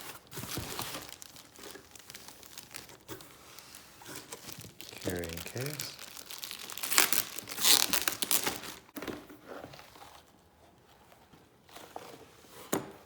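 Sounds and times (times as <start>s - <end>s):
packaging crinkling and rustling: 0.0s - 9.0s.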